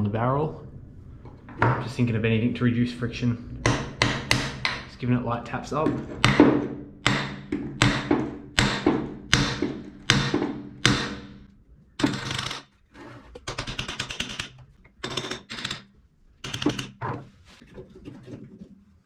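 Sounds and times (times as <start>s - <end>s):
metallic rattling and scraping: 0.6s - 18.8s
hammer tapping on metal: 3.6s - 5.0s, 5.8s - 12.6s, 16.4s - 16.9s.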